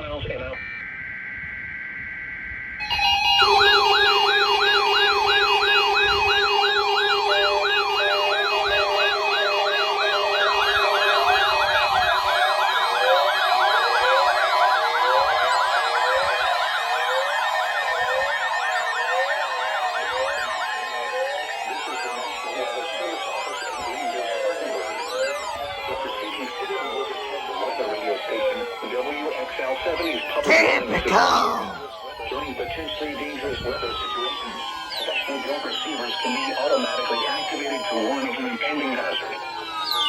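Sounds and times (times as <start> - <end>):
warbling siren alarms: 0.6 - 22.3
steady alarm tone: 1.2 - 11.9.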